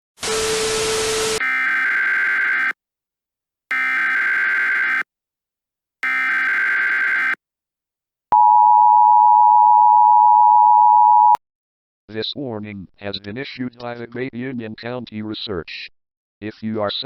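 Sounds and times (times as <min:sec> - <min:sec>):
harsh buzzing data bursts: 0:01.4 - 0:02.7, 0:03.7 - 0:05.0, 0:06.0 - 0:07.4.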